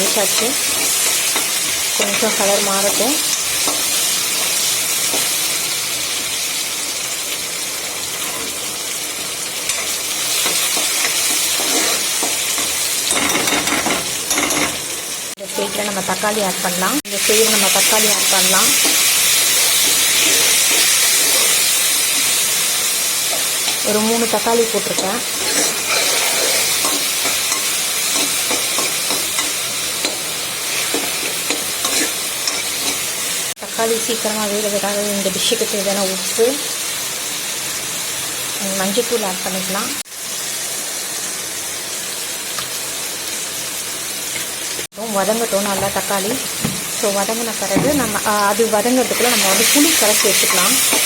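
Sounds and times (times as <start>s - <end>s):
onions sizzling in hot oil: 0.0s - 51.0s
spoon scraping a pan: 9.7s - 14.8s, 17.4s - 22.4s, 23.2s - 33.4s, 49.0s - 51.0s.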